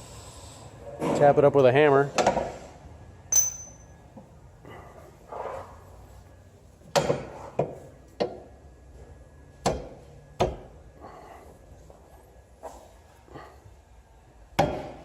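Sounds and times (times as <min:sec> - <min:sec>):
hammer tapping metal bolt: 0:03.4 - 0:03.8.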